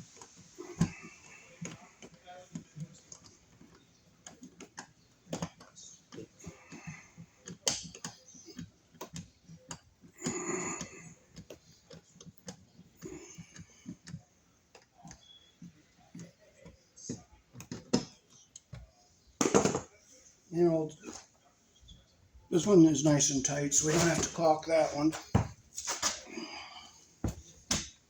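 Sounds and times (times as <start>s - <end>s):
clicks and taps of hand work: 1.6s - 19.9s.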